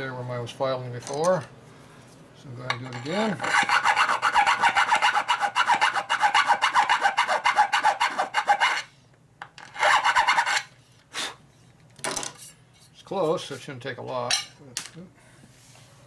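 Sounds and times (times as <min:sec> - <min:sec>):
hand file rasping: 0:03.4 - 0:08.9, 0:09.8 - 0:10.7.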